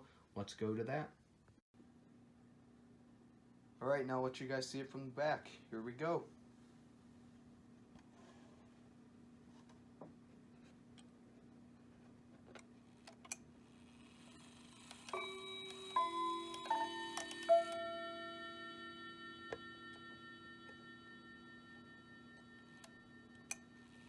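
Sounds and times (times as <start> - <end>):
clock mechanism clicks: 14.0 - 18.0, 21.8 - 24.0
clock chime notes: 15.1 - 24.0.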